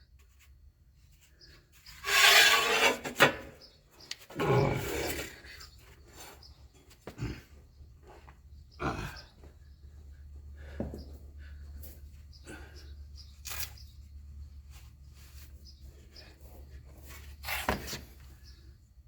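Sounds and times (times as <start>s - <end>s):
file rasping on metal: 2.0s - 3.2s.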